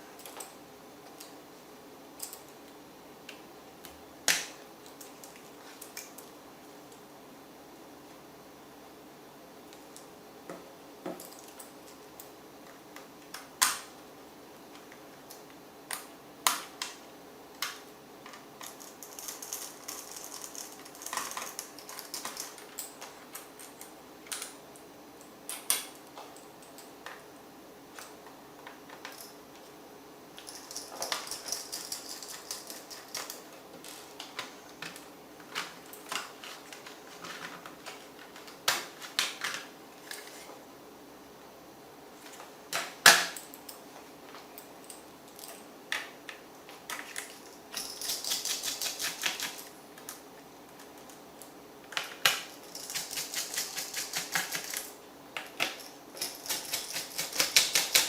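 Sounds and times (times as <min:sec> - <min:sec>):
clicks of laptop parts and tools: 0:42.3 - 0:43.8.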